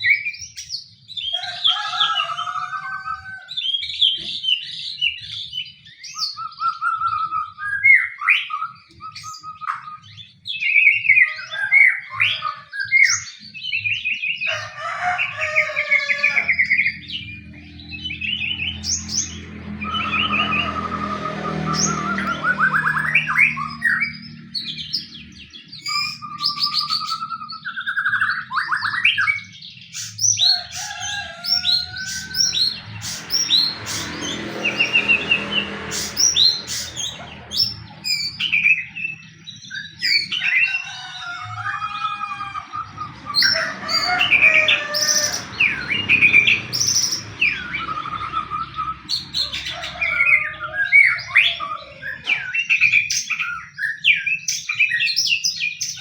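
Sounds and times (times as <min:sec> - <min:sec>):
bird singing whistles and trills: 0:00.0 - 0:01.8, 0:03.1 - 0:14.5, 0:16.5 - 0:34.1.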